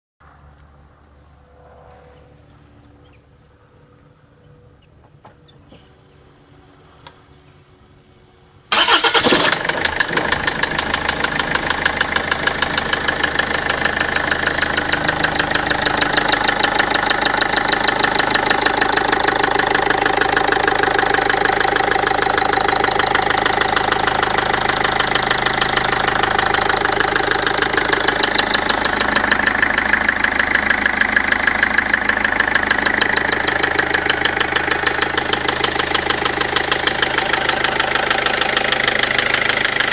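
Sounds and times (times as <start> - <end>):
diesel engine starting and idling: 8.5 - 39.9
engine knock: 8.7 - 39.9.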